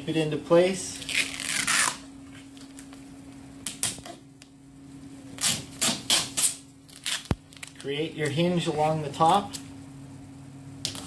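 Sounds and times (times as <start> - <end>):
masking tape tearing: 1.0 - 2.1, 5.4 - 7.9.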